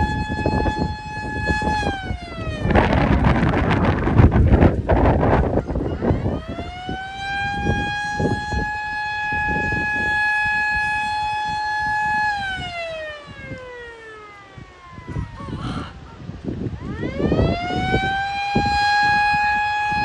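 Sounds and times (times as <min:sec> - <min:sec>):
warning siren wailing: 0:00.0 - 0:20.0
wind buffeting microphone: 0:00.0 - 0:20.0.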